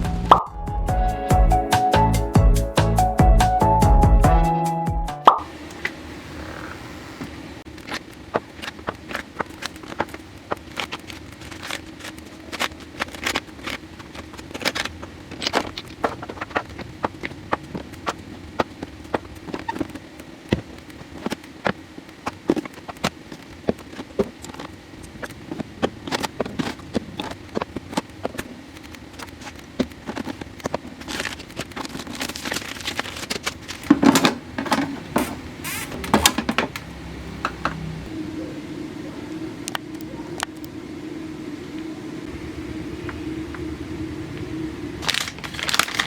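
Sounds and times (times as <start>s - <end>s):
steady low hum: 0.0s - 4.6s, 33.4s - 46.0s.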